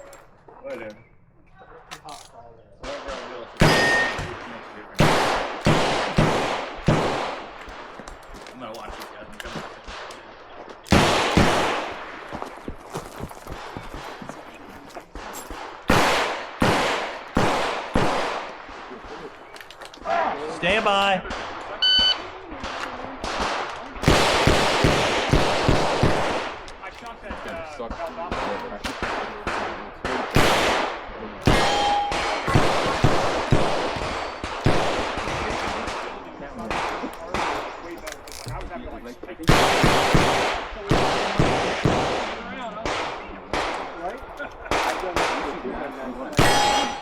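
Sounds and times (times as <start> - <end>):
handgun shots with echo: 3.1 - 7.7, 28.4 - 38.2, 39.4 - 47.0.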